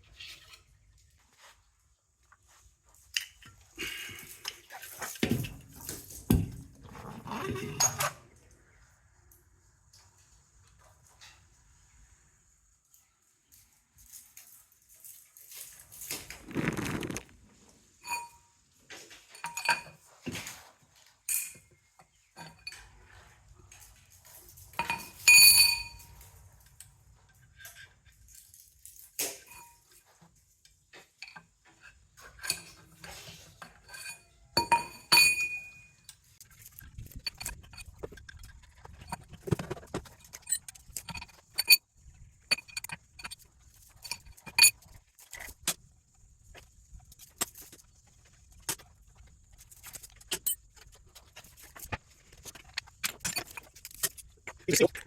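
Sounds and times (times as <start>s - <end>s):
metal tools clinking: 19.3s - 20.1s, 21.3s - 26.3s, 31.0s - 45.5s, 49.8s - 54.9s.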